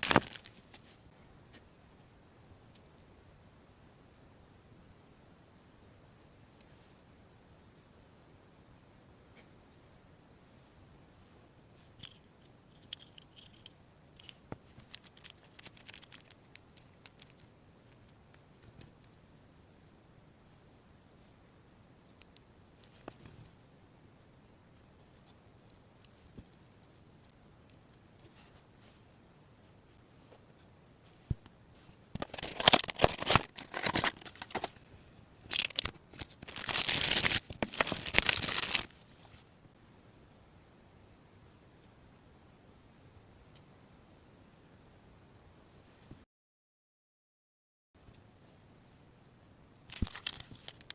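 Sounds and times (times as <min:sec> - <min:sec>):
wrapping crinkling and rustling: 0:00.0 - 0:01.0, 0:12.8 - 0:19.0, 0:31.8 - 0:39.4, 0:49.9 - 0:50.9.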